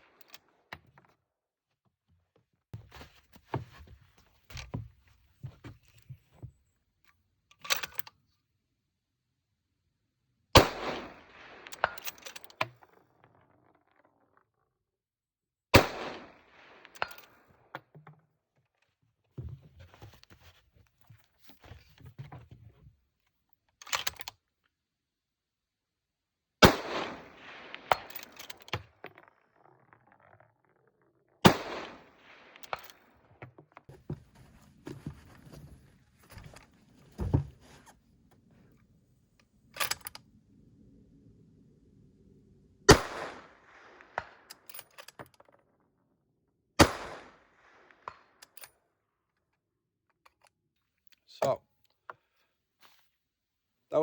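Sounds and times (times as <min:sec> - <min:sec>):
rifle shots: 0:10.6 - 0:12.1, 0:15.8 - 0:17.2, 0:26.6 - 0:28.6, 0:31.4 - 0:33.0, 0:42.9 - 0:44.7, 0:46.8 - 0:48.1
clattering handling noise: 0:32.6 - 0:38.6.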